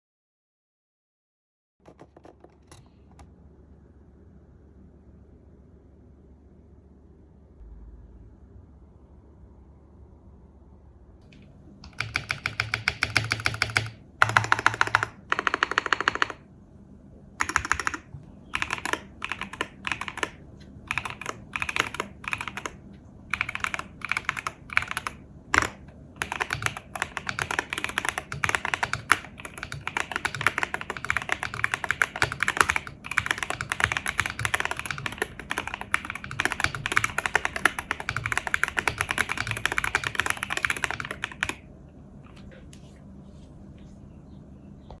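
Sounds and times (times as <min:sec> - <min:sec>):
mechanical keyboard typing: 0:01.8 - 0:03.2, 0:11.8 - 0:16.4, 0:17.4 - 0:41.6.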